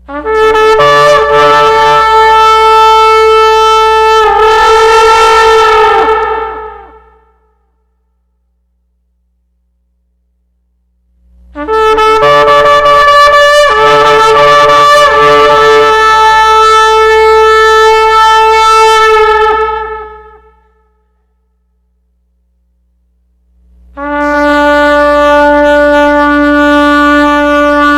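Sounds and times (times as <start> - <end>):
ram's horn blast: 0.0 - 7.7, 11.1 - 21.3, 23.4 - 27.9.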